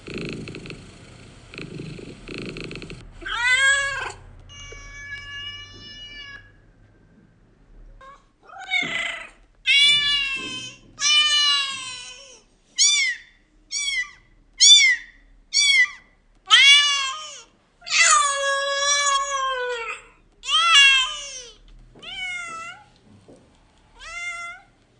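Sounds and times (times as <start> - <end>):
cat meowing: 3.2 - 6.6, 8.0 - 22.9, 24.0 - 24.8.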